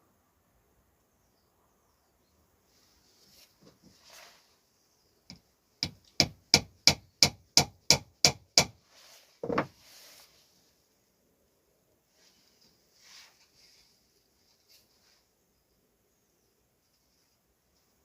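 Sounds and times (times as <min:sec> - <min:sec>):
hammer striking wood: 0:05.8 - 0:08.8.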